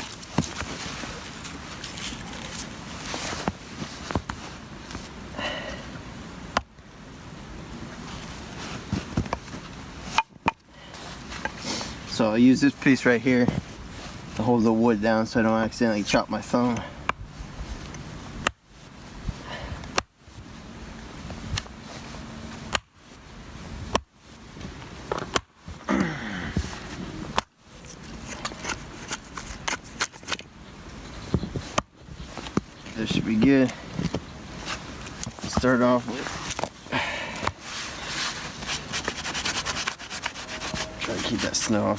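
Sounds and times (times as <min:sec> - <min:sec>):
axe chopping firewood: 0:22.7 - 0:22.9
wood creaking: 0:37.8 - 0:41.9.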